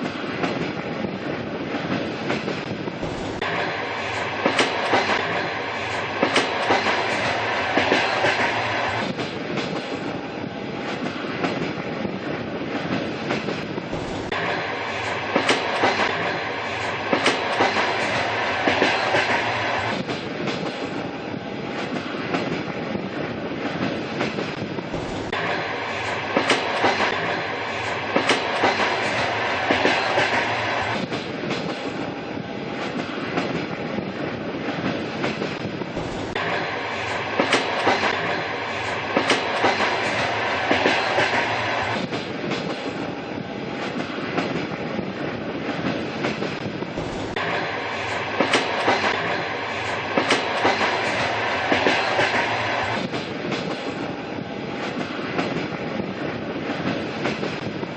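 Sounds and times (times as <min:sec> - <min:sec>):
train rumbling: 0:00.0 - 0:57.9.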